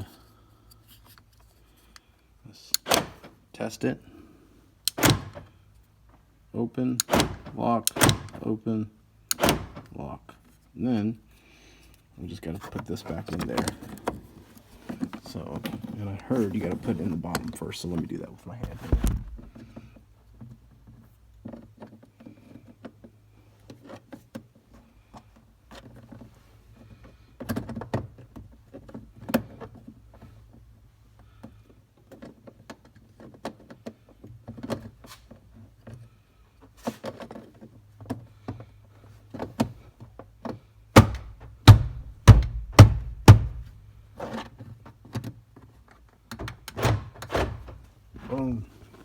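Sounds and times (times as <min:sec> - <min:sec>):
loud knocks: 0:41.0 - 0:43.8.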